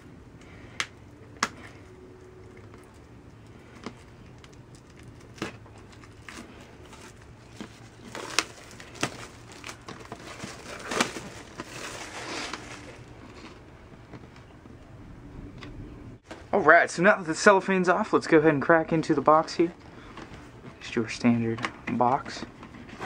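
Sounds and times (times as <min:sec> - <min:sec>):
cellophane tearing and crinkling: 0:03.8 - 0:13.6.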